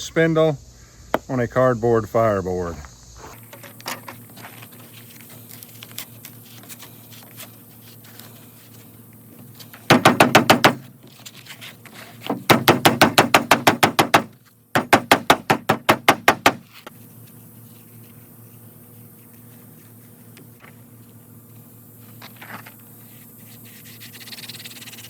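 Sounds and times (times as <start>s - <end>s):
hand drill rubbing on fireboard: 21.6s - 25.0s.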